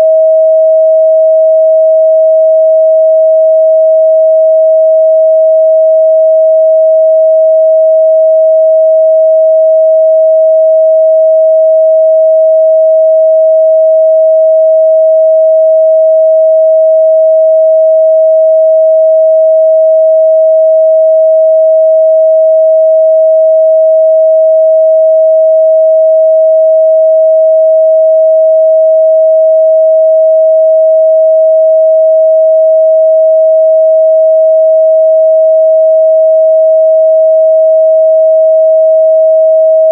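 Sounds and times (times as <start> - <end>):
sine-wave test tone: 0.0 - 39.9.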